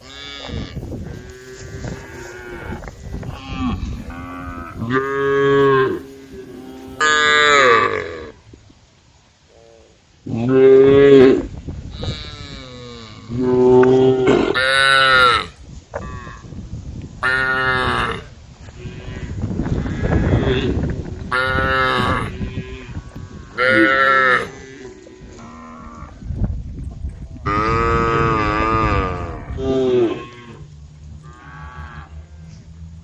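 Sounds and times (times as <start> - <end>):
cows mooing: 0.0 - 8.4, 27.4 - 33.0
low noisy rumble: 17.9 - 33.0.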